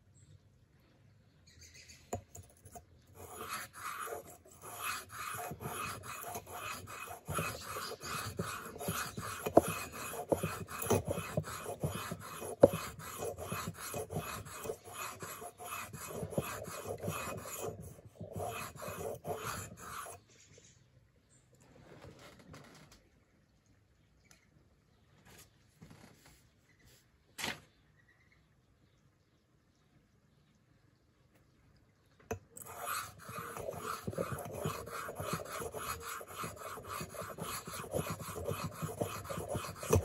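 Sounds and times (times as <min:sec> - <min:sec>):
knife scraping sharpening stone: 0:02.2 - 0:20.2, 0:32.6 - 0:40.0.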